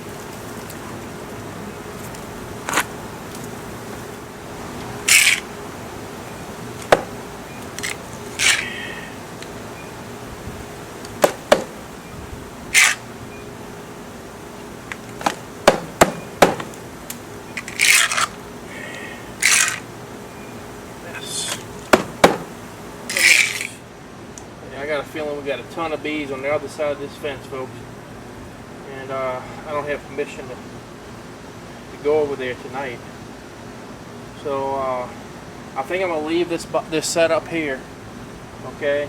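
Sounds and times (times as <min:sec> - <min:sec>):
bees humming: 0:00.0 - 0:23.9
sharp clicks and knocks: 0:11.0 - 0:11.8, 0:14.9 - 0:18.3, 0:21.5 - 0:22.5.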